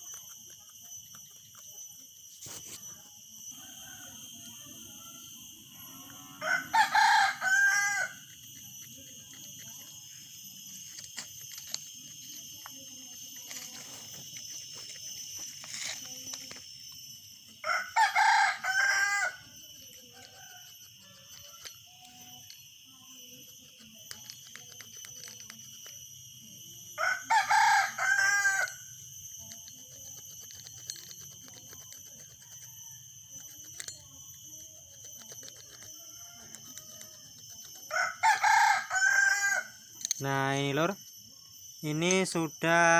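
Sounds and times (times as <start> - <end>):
high-pitched background hum: 0.0 - 42.9
rooster crowing: 3.4 - 8.4, 17.4 - 22.3, 26.9 - 28.9, 35.7 - 39.9.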